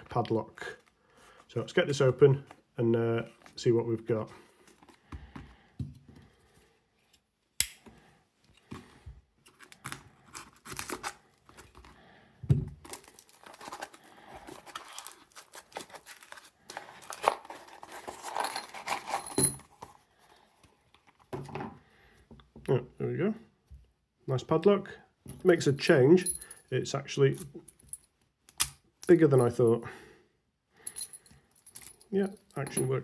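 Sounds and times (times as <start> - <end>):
packaging tearing and crinkling: 9.8 - 11.2, 12.8 - 19.2.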